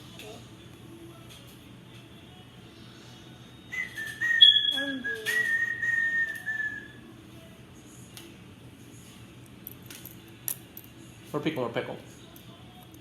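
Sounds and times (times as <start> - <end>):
person whistling: 3.7 - 7.0.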